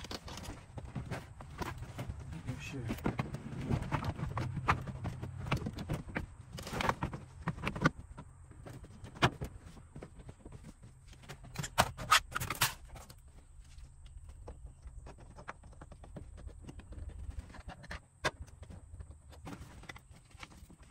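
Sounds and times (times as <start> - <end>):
tools clicking and clattering: 11.3 - 13.2.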